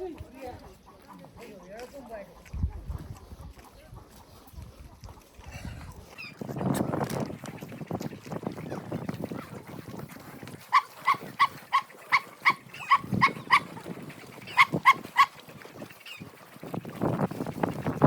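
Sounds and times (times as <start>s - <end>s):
dog barking: 10.7s - 13.6s.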